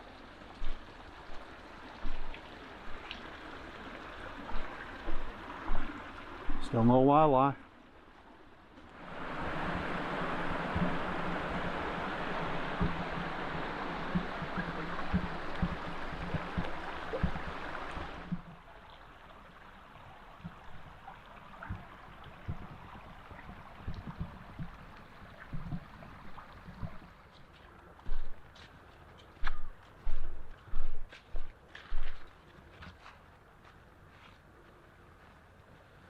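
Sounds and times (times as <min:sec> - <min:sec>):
stream running: 0:00.0 - 0:34.2
footsteps on woodland path: 0:00.5 - 0:03.3, 0:04.4 - 0:06.8, 0:26.9 - 0:36.0.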